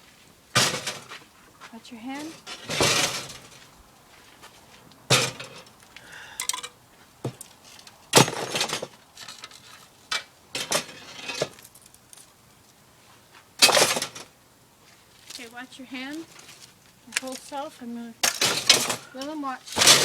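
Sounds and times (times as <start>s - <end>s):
glass panes clinking: 0.6s - 1.2s, 2.0s - 3.6s, 5.1s - 12.3s, 13.6s - 14.3s, 15.3s - 20.0s.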